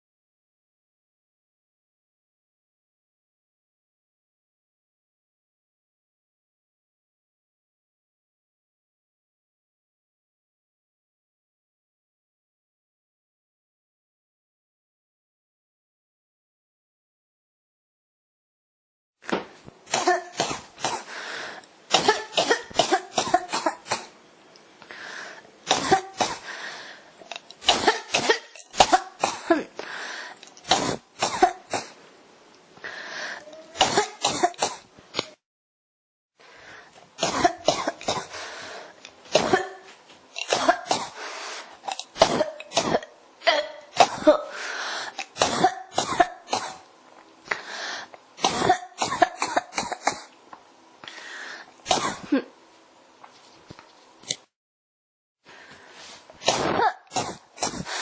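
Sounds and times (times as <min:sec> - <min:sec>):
person coughing: 0:19.9 - 0:21.1, 0:21.9 - 0:24.1, 0:25.7 - 0:26.4, 0:27.6 - 0:29.8, 0:30.7 - 0:32.0, 0:33.6 - 0:35.3, 0:37.2 - 0:38.4, 0:39.3 - 0:41.2, 0:42.2 - 0:46.9, 0:48.4 - 0:50.3, 0:51.9 - 0:52.5, 0:56.4 - 0:57.9.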